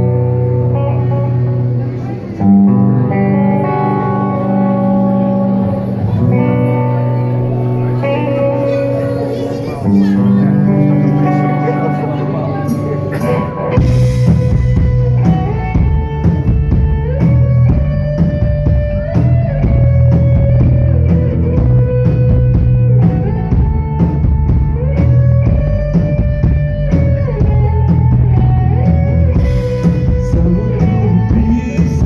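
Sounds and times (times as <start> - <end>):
guitar melody: 0.0 - 32.0
drum kit beat: 12.6 - 32.0.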